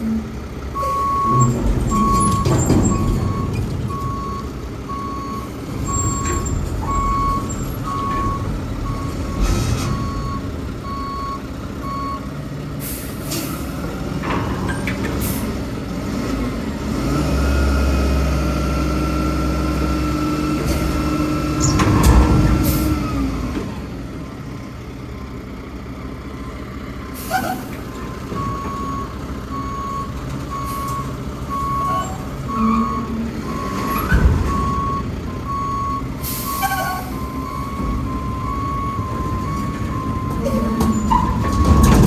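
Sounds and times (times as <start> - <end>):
diesel truck engine under load: 0.0 - 42.0
backup alarm beeping: 0.8 - 12.3, 28.3 - 42.0
air brake hiss: 12.8 - 13.7, 27.2 - 27.8, 36.2 - 37.2.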